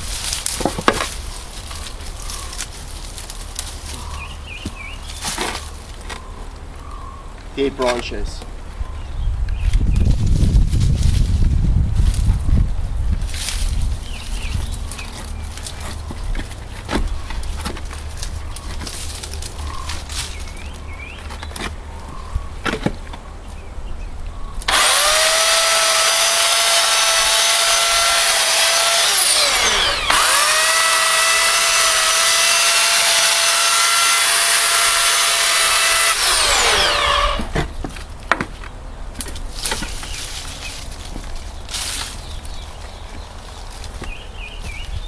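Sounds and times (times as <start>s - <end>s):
rustling handling noise: 0.0s - 6.6s, 13.1s - 23.6s, 36.2s - 45.0s
chainsaw cutting branches: 24.6s - 37.8s
electric chainsaw whine: 24.7s - 37.5s.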